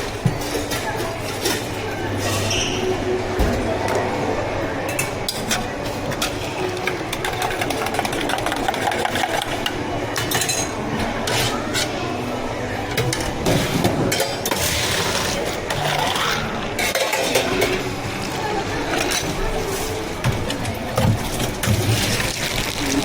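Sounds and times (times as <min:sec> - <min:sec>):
cups and utensils clicking: 0:04.9 - 0:11.5.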